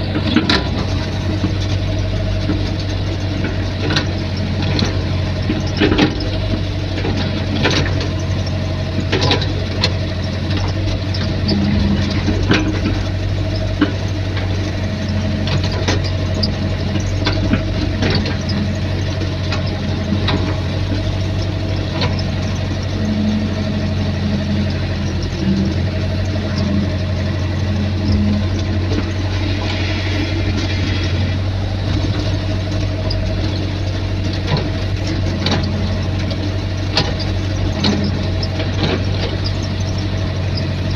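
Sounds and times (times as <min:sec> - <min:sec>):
excavator diesel engine humming: 0:00.0 - 0:40.9
metal clanks and knocks: 0:09.0 - 0:23.5, 0:24.2 - 0:40.0.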